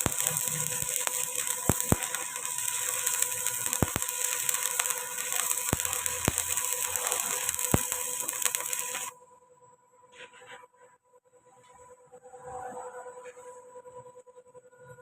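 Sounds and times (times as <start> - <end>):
welding arc crackling and hissing: 0.0 - 9.2.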